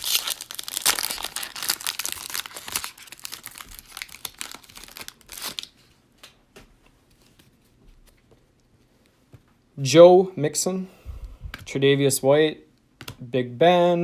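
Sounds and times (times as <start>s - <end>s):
plastic wrapper tearing and crinkling: 0.0s - 5.9s.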